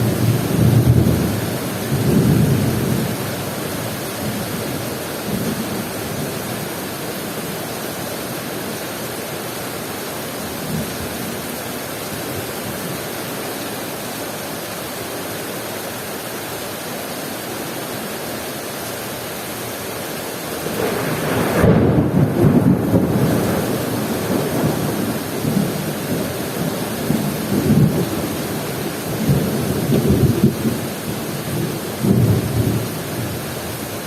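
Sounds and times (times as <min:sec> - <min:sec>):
heavy rain hissing: 0:00.0 - 0:34.0
low rumble of thunder: 0:20.6 - 0:33.4.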